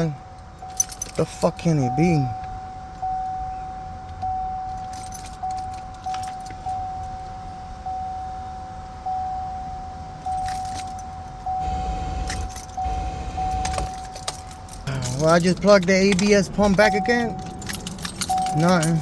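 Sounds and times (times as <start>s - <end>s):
vehicle warning chime dinging: 0.0s - 19.0s
handling noise: 10.4s - 19.0s.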